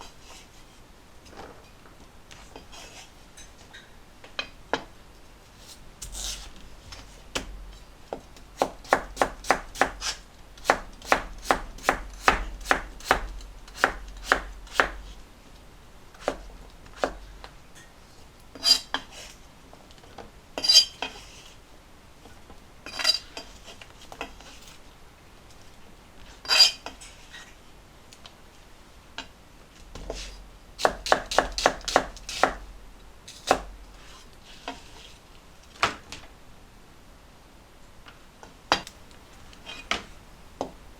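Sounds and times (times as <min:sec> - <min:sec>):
knife chopping on cutting board: 0:08.6 - 0:15.2, 0:16.2 - 0:16.4, 0:17.0 - 0:17.2, 0:30.1 - 0:32.7, 0:33.3 - 0:33.7.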